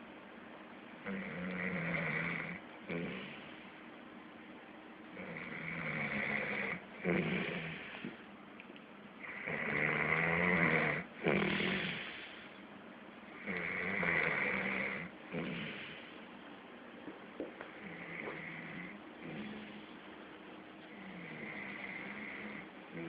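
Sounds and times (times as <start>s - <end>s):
person snoring: 1.0s - 3.5s, 5.2s - 8.2s, 9.2s - 12.4s, 13.4s - 16.1s, 17.8s - 19.9s, 20.9s - 23.0s.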